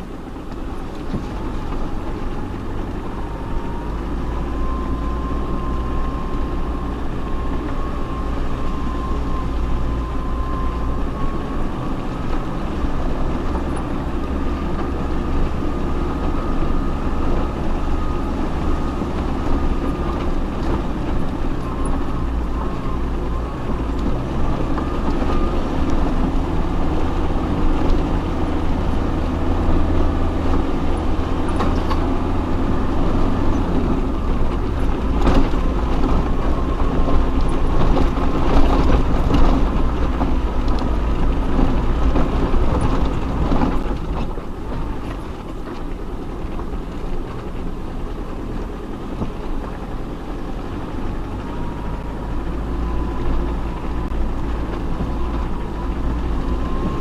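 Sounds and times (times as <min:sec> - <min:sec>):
off-road vehicle engine running: 0:00.0 - 0:57.0.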